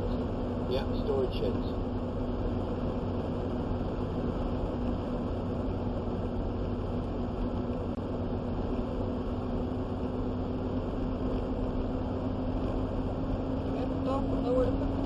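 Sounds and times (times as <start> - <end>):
engine and road noise in cab: 0.0 - 15.0
low hum: 0.0 - 15.0.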